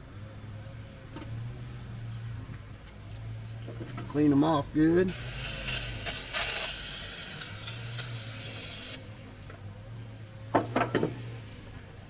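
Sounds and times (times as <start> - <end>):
aerosol spray hissing: 5.1 - 9.1.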